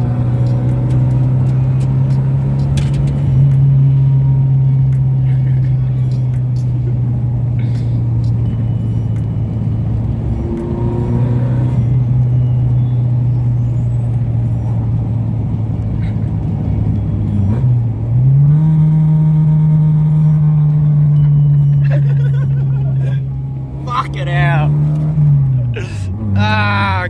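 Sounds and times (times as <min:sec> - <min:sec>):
car engine droning: 0:00.0 - 0:27.0.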